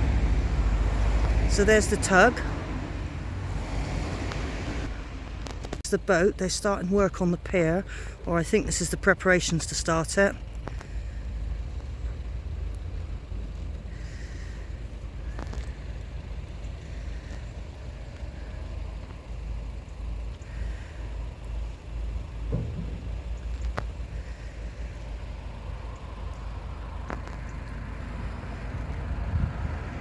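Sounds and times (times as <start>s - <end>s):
wind buffeting microphone: 28.7s - 30.0s.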